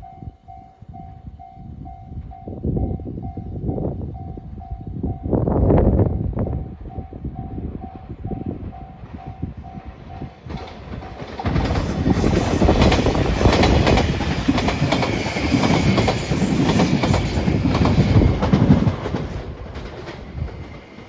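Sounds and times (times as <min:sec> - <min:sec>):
train wheels clacking over rail joints: 0:10.4 - 0:21.0
faint high wheel squeal: 0:15.0 - 0:16.8.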